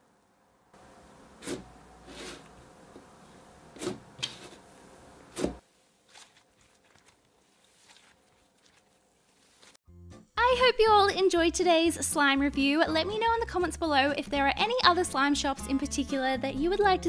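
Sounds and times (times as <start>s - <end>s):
slime squishing: 5.3s - 9.8s.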